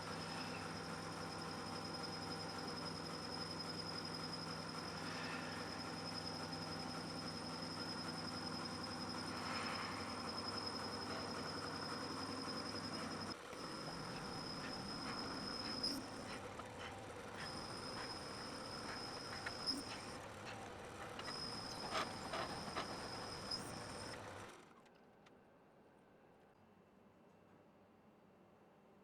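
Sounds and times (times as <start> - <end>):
high-pitched whine: 0.0 - 16.4
motor hum: 0.0 - 24.4.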